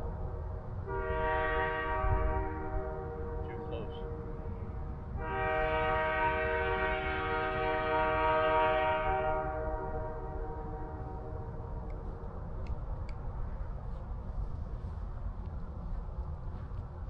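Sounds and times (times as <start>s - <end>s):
locomotive air horn chord: 0.9s - 3.7s, 5.2s - 11.5s.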